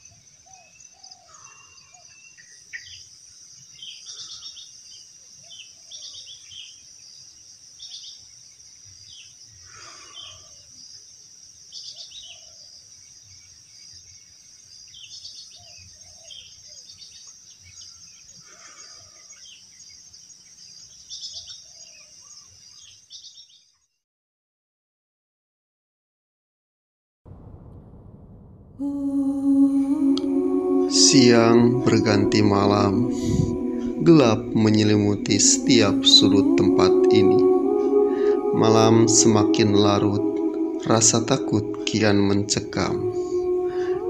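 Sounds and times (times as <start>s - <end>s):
high-pitched insect drone: 28.9s - 44.0s.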